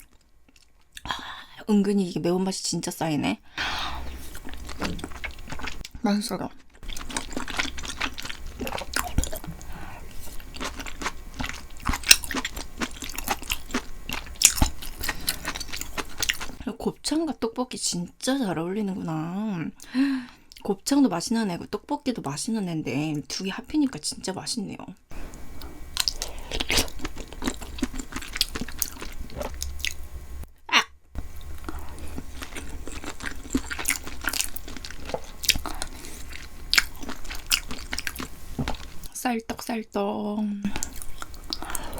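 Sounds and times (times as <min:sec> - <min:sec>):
close chewing and mouth clicks: 0:00.0 - 0:01.1, 0:04.0 - 0:06.0, 0:06.6 - 0:16.6, 0:25.3 - 0:30.1, 0:30.7 - 0:39.1, 0:40.6 - 0:41.9.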